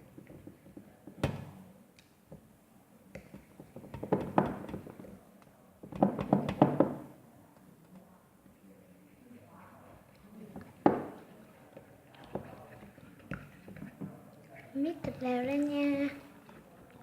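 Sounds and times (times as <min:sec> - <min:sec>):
slime being stirred: 0:09.8 - 0:17.0.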